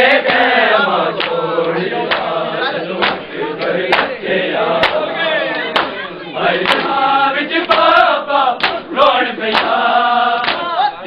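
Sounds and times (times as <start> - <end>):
men chanting in unison: 0.0 - 11.0
hands beating on chests: 3.0 - 4.2, 4.8 - 5.1, 5.7 - 6.0, 6.6 - 7.0, 7.6 - 7.9, 8.6 - 8.9, 9.5 - 9.8, 10.4 - 10.8.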